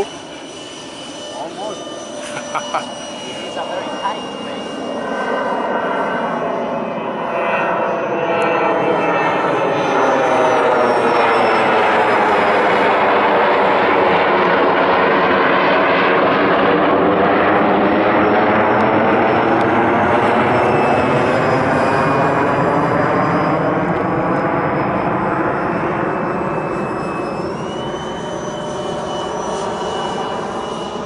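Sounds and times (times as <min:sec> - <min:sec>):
model jet fan whine: 0:00.0 - 0:31.0.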